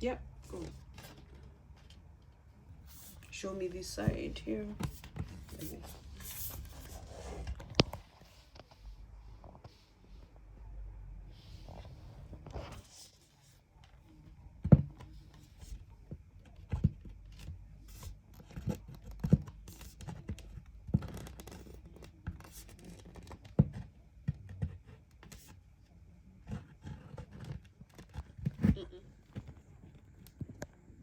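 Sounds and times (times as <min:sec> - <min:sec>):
furniture parts scraping: 0:04.0 - 0:09.8.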